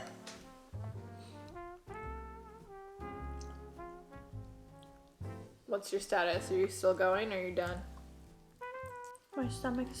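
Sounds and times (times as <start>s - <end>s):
bass line: 0.8s - 5.5s.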